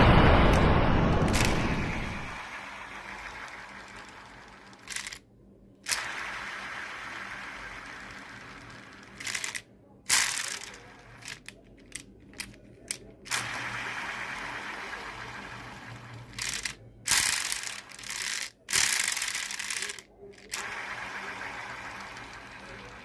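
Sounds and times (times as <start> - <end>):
loud boom: 0.0 - 2.5
sharp mechanical clicks: 3.1 - 5.2, 5.8 - 15.0, 16.2 - 23.0.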